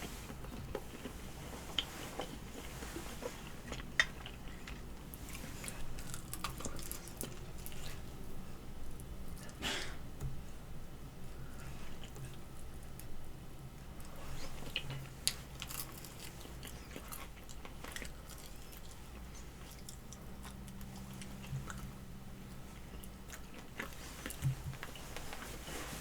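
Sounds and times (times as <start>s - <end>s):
faint low hum: 0.0s - 26.0s.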